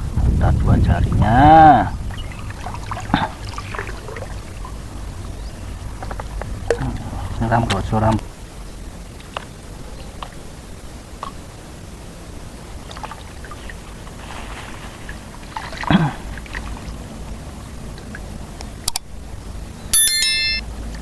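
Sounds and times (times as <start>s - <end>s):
water splashing and trickling: 1.1s - 19.6s
high electronic tone: 19.9s - 20.7s.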